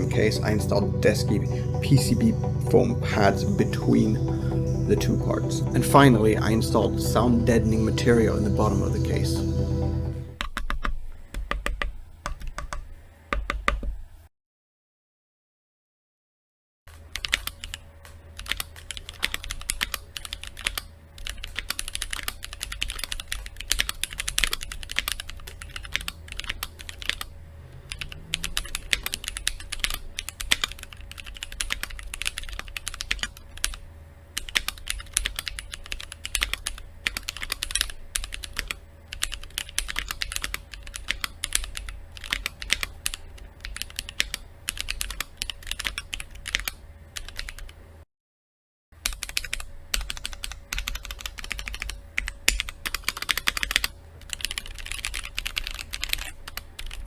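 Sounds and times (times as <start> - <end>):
mechanical keyboard typing: 10.4 - 13.9, 17.1 - 17.8, 18.4 - 27.3, 27.9 - 33.8, 34.4 - 47.8, 49.0 - 57.0.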